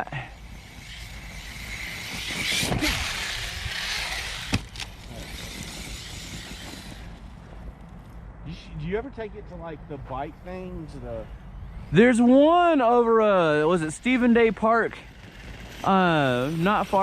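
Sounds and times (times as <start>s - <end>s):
rc car motor whine and tyre noise: 0.0s - 8.2s, 11.1s - 17.0s.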